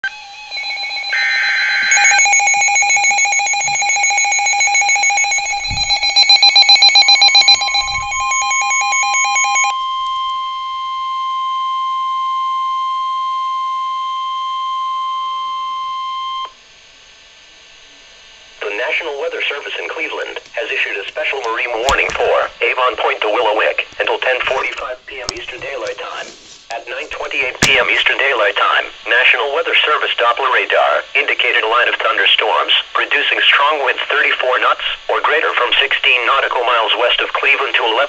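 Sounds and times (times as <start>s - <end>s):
electronic alarm beeping: 0.0s - 16.5s
steady warning tone: 0.0s - 16.5s.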